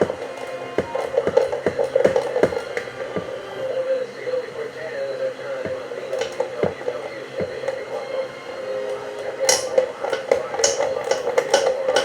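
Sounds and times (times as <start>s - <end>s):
steady hum: 0.0s - 12.0s
sharp metallic clicks: 5.7s - 12.0s.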